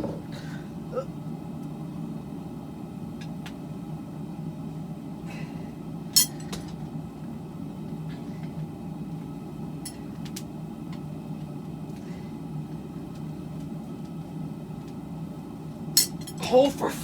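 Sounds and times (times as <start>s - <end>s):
forge burner rumbling: 0.0s - 17.0s.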